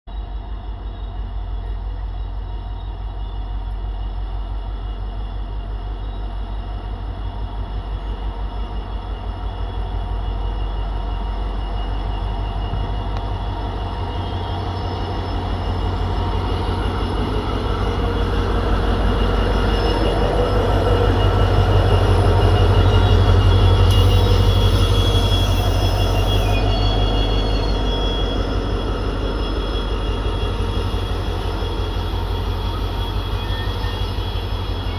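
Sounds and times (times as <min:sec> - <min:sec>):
diesel locomotive engine throbbing: 0:00.1 - 0:34.9.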